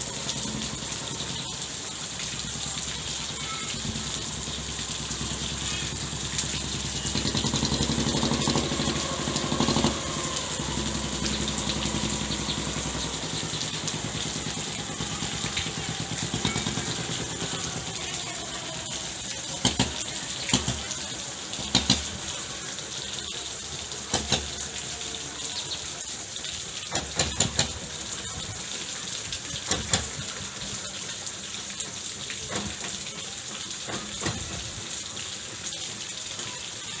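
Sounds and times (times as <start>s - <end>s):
rain hissing: 0.0s - 37.0s
raindrops tapping on tent fabric: 19.6s - 22.4s.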